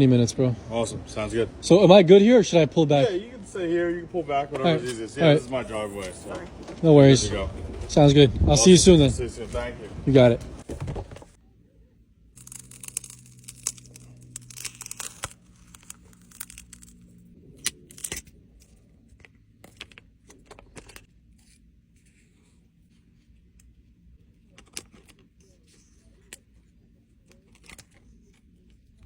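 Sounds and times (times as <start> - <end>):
low steady hum: 0.0 - 29.0
tearing and crinkling: 12.4 - 18.8.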